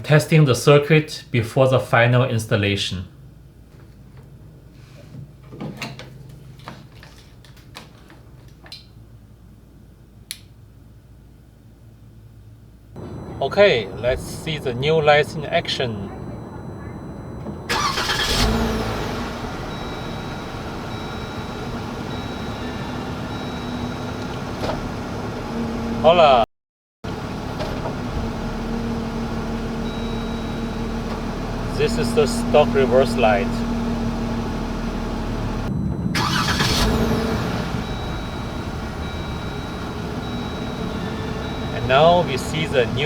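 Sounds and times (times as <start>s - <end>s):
faint steady tones: 11.9s - 25.4s, 27.2s - 43.0s
car engine starting and idling: 11.9s - 26.4s, 27.1s - 43.0s
faint high steady tone: 13.0s - 18.6s, 35.7s - 43.0s.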